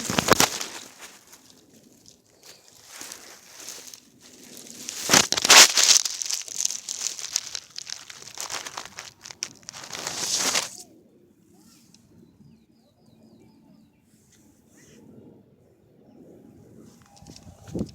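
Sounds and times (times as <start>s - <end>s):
close crinkling and rustling: 0.0s - 10.8s.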